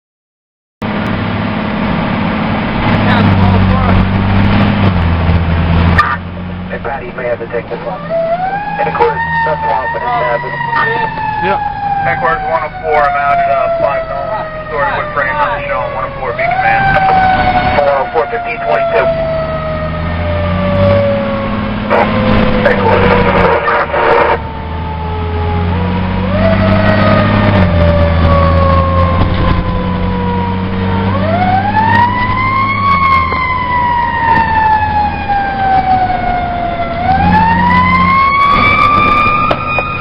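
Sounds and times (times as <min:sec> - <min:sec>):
fire truck engine running: 0:00.8 - 0:40.0
fire siren wailing: 0:02.1 - 0:40.0
radio voice: 0:06.0 - 0:08.1, 0:08.8 - 0:19.1, 0:21.9 - 0:24.4.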